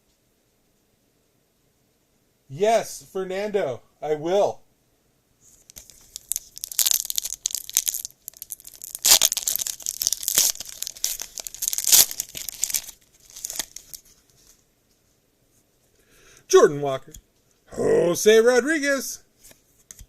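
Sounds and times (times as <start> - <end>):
foil wrapper tearing and crinkling: 5.6 - 14.2.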